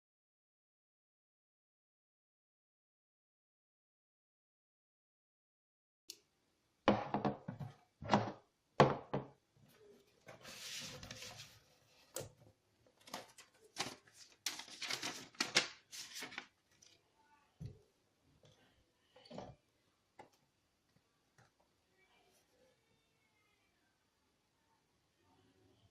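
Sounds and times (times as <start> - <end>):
packaging rustling: 13.0 - 17.0.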